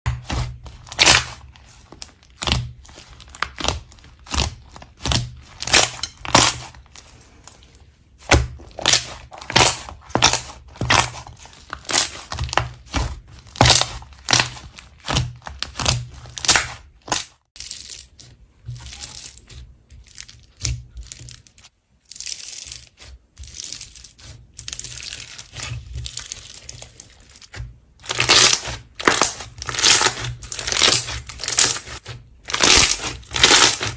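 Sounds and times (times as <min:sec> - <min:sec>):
slime squishing and popping: 0:08.2 - 0:33.9.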